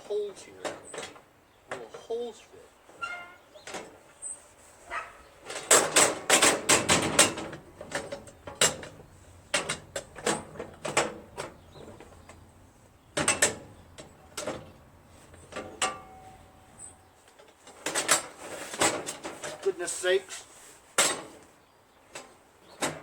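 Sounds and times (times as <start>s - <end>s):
metal brackets knocking and clanking: 0.6s - 2.2s, 3.0s - 4.0s, 4.9s - 19.8s.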